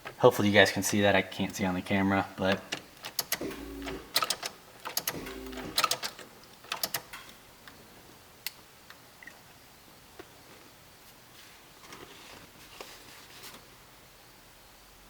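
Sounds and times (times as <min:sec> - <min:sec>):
ignition key clicks: 0:03.0 - 0:07.2
short low hum: 0:03.4 - 0:04.2, 0:05.1 - 0:05.8.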